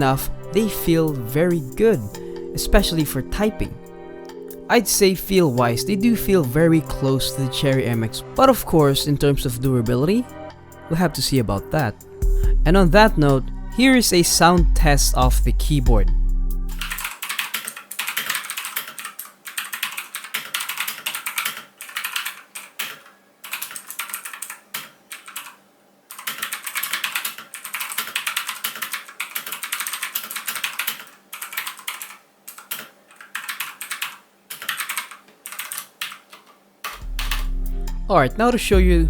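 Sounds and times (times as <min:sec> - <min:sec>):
clicky keyboard typing: 0:16.7 - 0:37.5.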